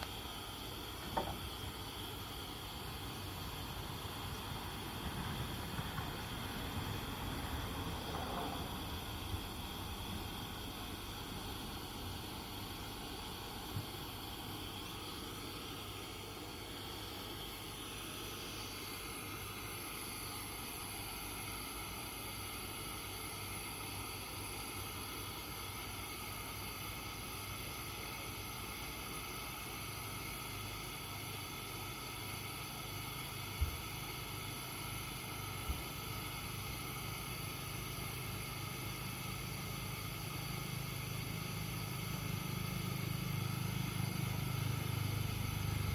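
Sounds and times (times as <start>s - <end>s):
pressure lantern hissing: 0.0s - 45.9s.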